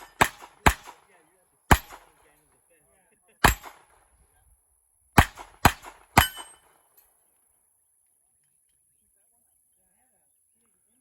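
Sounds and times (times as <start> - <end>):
gunshots with echo: 0.0 - 1.1, 1.7 - 2.2, 3.4 - 4.0, 5.2 - 6.7.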